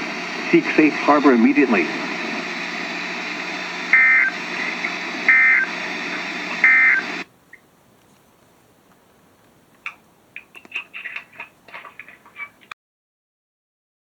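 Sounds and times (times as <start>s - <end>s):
warbling data tones: 0.0s - 7.2s
radio static: 0.0s - 7.3s.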